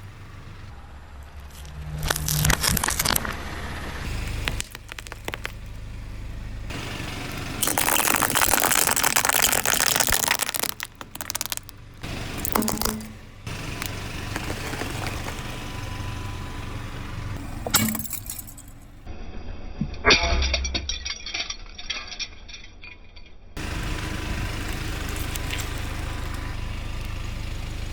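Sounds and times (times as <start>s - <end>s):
objects crunching under car tyre: 1.5s - 16.0s, 24.7s - 26.4s.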